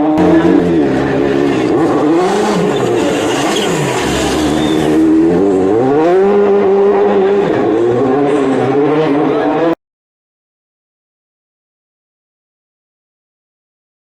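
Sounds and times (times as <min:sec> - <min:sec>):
car engine revving hard: 0:00.0 - 0:09.8.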